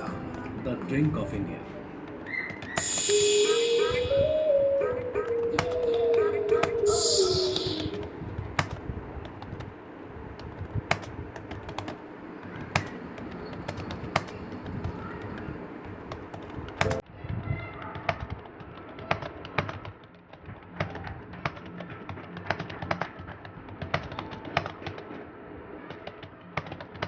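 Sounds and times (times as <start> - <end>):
keyboard keys clicking: 0.0 - 17.0
steady background hum: 0.0 - 17.0.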